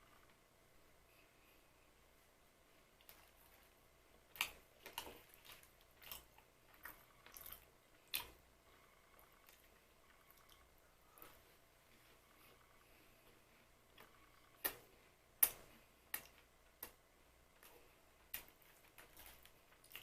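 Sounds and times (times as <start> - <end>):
crunchy chewing: 3.0 - 11.5, 17.6 - 20.0.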